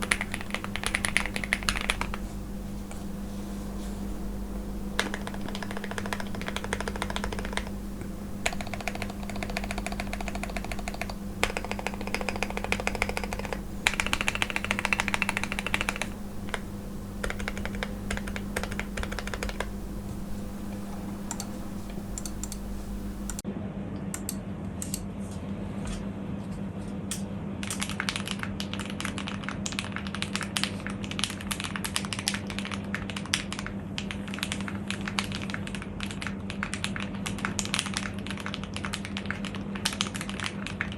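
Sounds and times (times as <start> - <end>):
mechanical keyboard typing: 0.0 - 3.3, 4.0 - 23.4, 27.6 - 33.7
steady low hum: 0.0 - 27.6.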